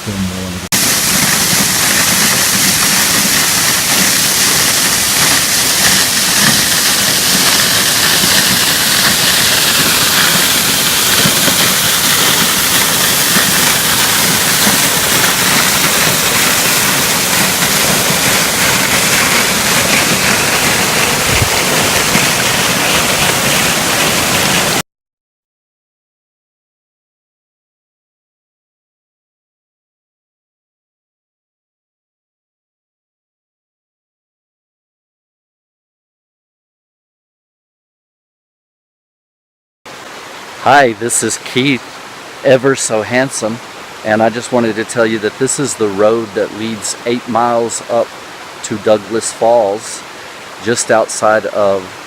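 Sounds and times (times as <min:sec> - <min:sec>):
waterfall rushing: 0:00.1 - 0:24.8, 0:39.9 - 0:52.0.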